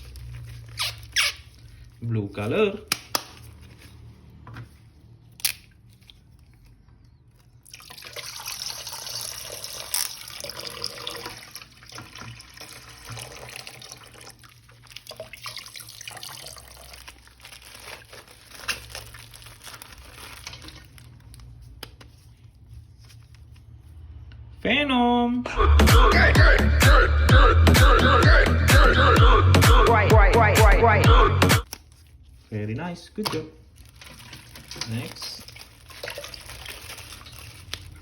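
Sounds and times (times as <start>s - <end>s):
water running and splashing: 7.7s - 17.4s, 34.0s - 37.8s.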